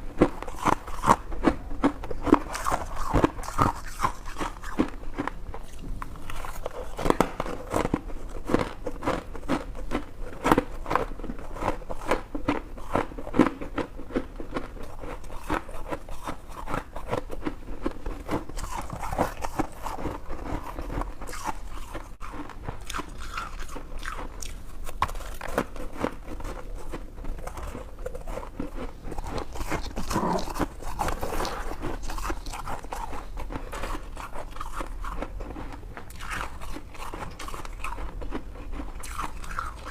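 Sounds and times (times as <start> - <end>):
person crunching ice: 18.3 - 39.9.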